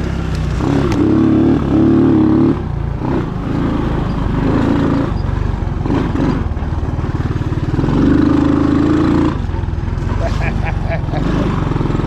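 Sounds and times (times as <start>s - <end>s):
motorbike engine revving: 0.0s - 12.0s.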